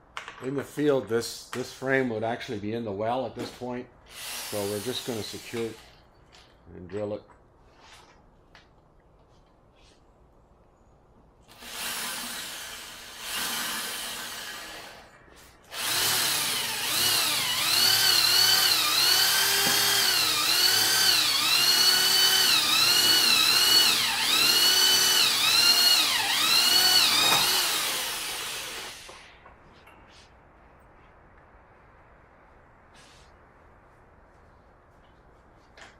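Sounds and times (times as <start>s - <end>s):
power drill driving screw into steel: 4.1s - 6.0s, 11.5s - 15.1s, 15.7s - 29.3s.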